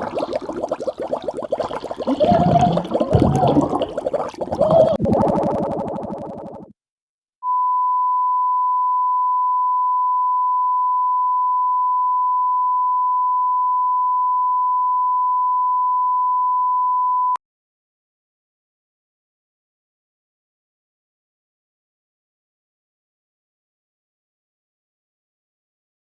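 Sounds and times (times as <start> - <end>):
sine test tone: 7.4 - 17.4.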